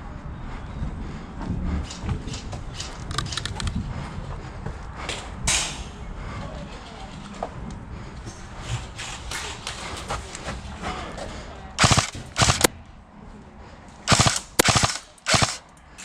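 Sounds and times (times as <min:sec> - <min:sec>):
airsoft guns firing bursts: 0:11.8 - 0:12.7, 0:14.1 - 0:15.6.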